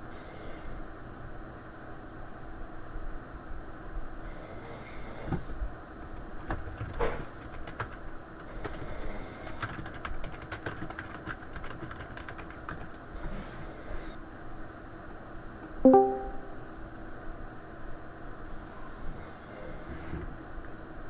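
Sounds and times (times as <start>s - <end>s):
typing on computer keyboard: 5.3s - 13.4s.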